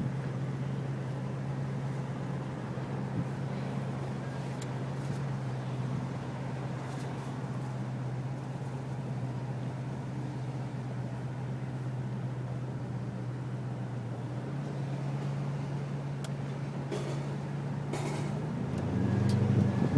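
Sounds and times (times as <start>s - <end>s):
vehicle running hum: 0.0s - 19.9s.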